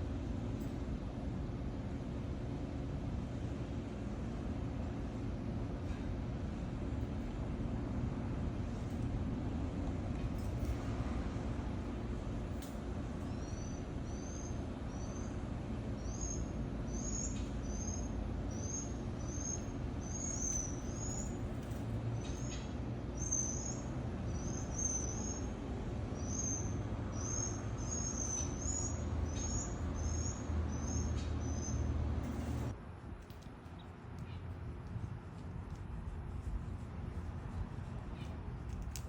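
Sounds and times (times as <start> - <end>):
small bird chirping: 13.2 - 15.3, 16.0 - 21.4, 23.2 - 25.5, 26.2 - 31.9
steady low rumble: 24.0 - 39.0.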